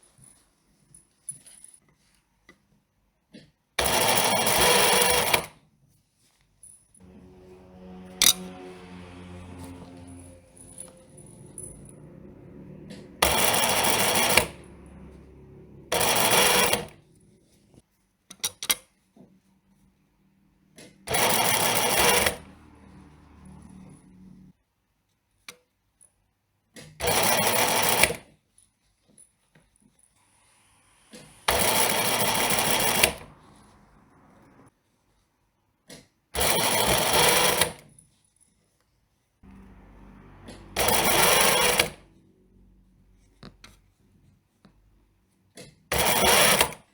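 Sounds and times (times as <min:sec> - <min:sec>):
sewing machine stitching: 0:03.8 - 0:05.5, 0:07.0 - 0:17.1, 0:21.1 - 0:24.5, 0:27.0 - 0:28.2, 0:31.1 - 0:33.7, 0:36.4 - 0:37.8, 0:40.4 - 0:42.1, 0:45.9 - 0:46.9.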